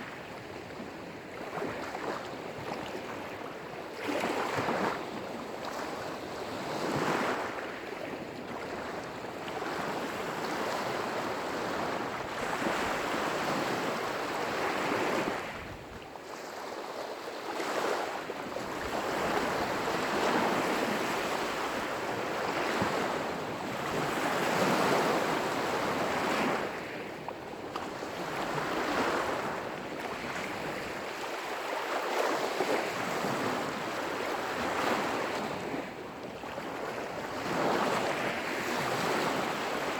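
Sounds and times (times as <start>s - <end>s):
waves washing on shore: 0.0s - 39.9s.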